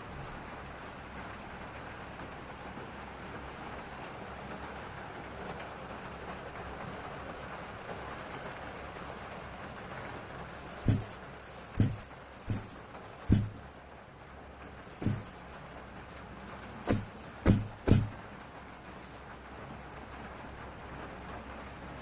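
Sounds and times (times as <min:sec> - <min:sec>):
small metal bells jingling: 0:10.1 - 0:13.7, 0:14.8 - 0:15.6, 0:16.4 - 0:19.4
soft low thump: 0:10.6 - 0:13.6, 0:14.9 - 0:15.4, 0:16.6 - 0:18.2.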